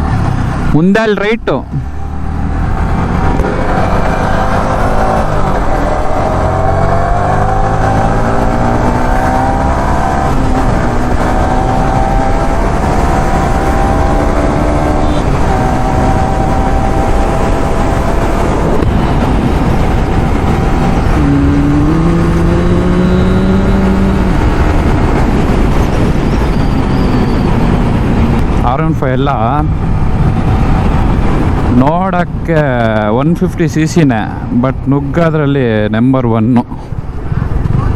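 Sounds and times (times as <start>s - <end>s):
wind noise rumble: 0.0s - 37.9s
motorcycle engine running: 1.8s - 28.6s.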